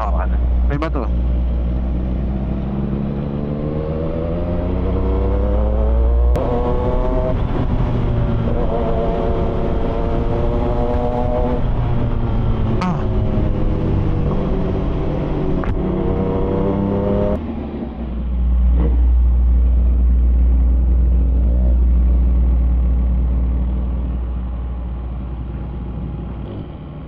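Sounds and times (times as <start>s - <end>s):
motorcycle engine revving: 0.0s - 24.4s
wind noise: 1.2s - 17.4s.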